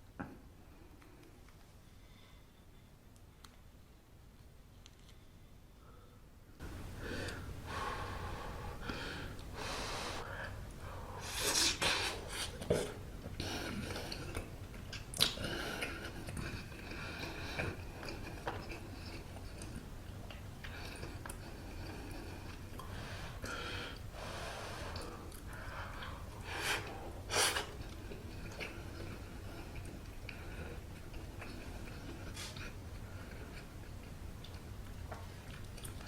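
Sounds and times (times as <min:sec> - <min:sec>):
person blowing on food: 0:11.2 - 0:12.7, 0:26.4 - 0:27.8
person chewing: 0:11.3 - 0:22.9, 0:26.8 - 0:36.0
sharp mouth clicks: 0:14.9 - 0:15.4.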